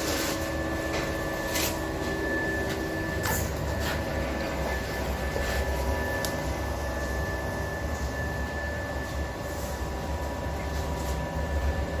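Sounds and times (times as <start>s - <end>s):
arc welding buzzing and crackling: 0.0s - 8.2s
constant hum: 0.0s - 12.0s
thin steady whine: 0.0s - 12.0s.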